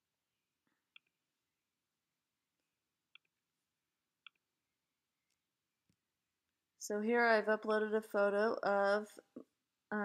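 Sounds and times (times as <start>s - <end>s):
computer mouse click: 4.2s - 4.4s.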